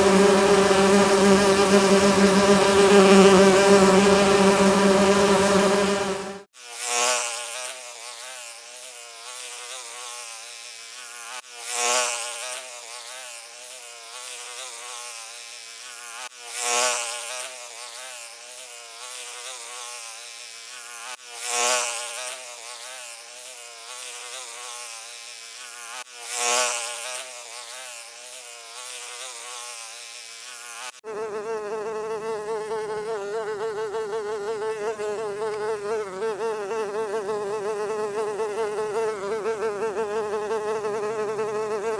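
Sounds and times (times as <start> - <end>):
steady high buzz: 0.0 - 6.5
flying insect wing buzz: 0.0 - 41.9.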